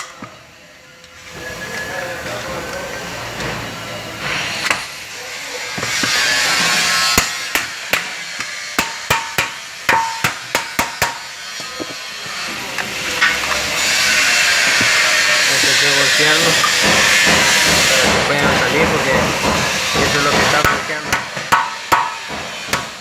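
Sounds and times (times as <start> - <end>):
sharp metal taps: 7.2 - 11.3.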